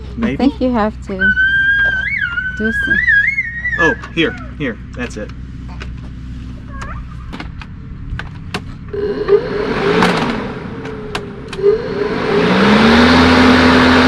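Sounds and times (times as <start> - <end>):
electric lawn mower whining: 1.2 - 4.3, 8.9 - 14.0.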